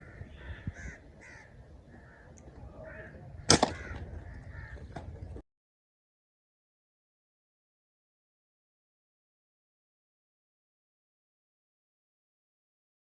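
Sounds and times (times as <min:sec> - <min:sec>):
birds calling harshly: 0:00.0 - 0:05.4
sharp loud crack: 0:03.4 - 0:04.0.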